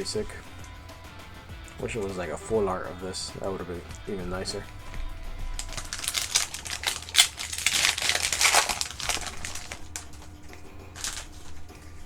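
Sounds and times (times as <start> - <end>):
foil wrapper crinkling: 3.9 - 12.0.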